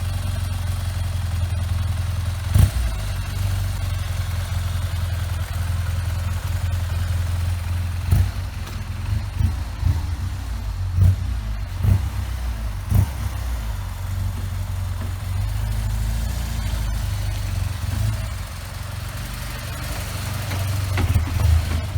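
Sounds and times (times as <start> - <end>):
engine running at low pitch: 0.0 - 21.9.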